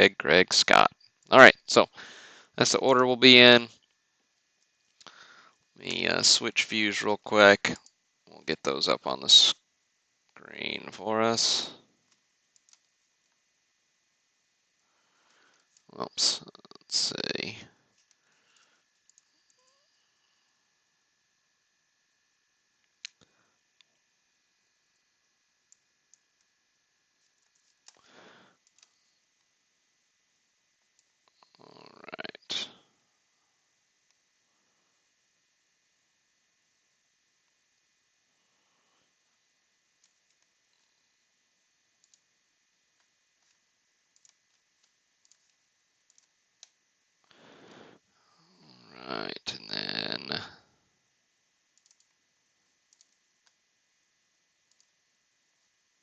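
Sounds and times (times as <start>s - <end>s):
computer mouse clicks: 12.1s - 12.9s, 18.0s - 19.8s, 27.2s - 28.0s, 28.6s - 29.5s, 42.0s - 42.3s, 43.0s - 46.8s, 51.7s - 52.2s, 52.9s - 53.6s, 54.6s - 55.0s.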